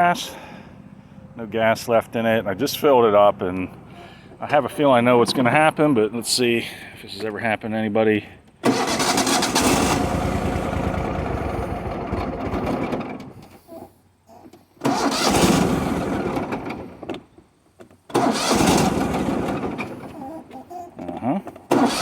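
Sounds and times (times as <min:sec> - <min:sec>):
engine starter cranking: 0:08.6 - 0:13.6, 0:14.8 - 0:17.3, 0:18.0 - 0:20.6, 0:21.5 - 0:22.0.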